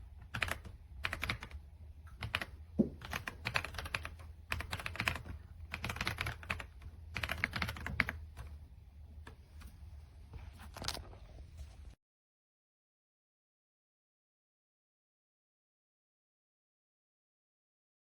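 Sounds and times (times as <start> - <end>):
mechanical keyboard typing: 0.2 - 8.6.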